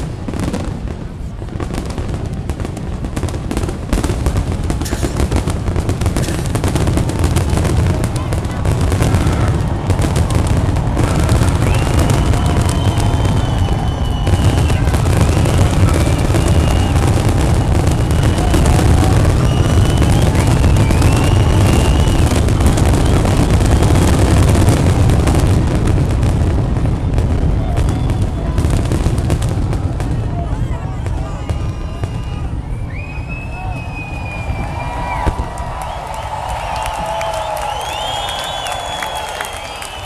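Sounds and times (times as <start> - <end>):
fireworks booming and cracking: 0.0 - 40.0
fireworks whistling: 0.0 - 40.0.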